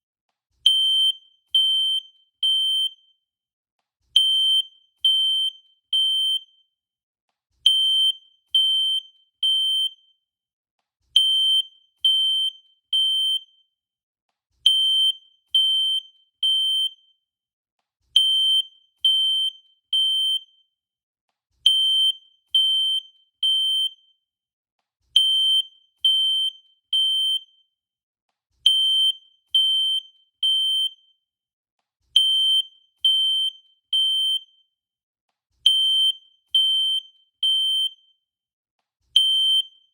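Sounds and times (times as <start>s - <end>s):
fire alarm beeping: 32.2s - 34.6s, 35.7s - 38.1s, 39.2s - 39.8s.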